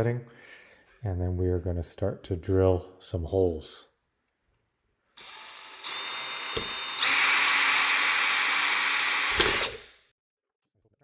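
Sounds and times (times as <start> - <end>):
power drill motor whine: 5.2 - 9.9.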